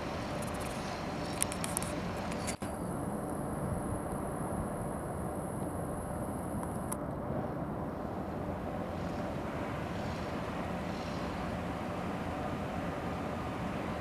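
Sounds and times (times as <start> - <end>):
thin high whine: 0.0 - 7.0
low outdoor rumble: 0.0 - 14.0.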